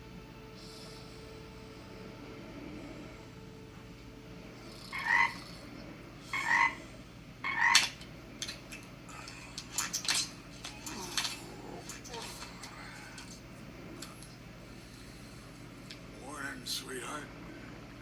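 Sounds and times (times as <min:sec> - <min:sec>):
short croaky calls: 0:04.9 - 0:05.6, 0:06.3 - 0:08.0
small clicks and rustles: 0:07.7 - 0:14.4.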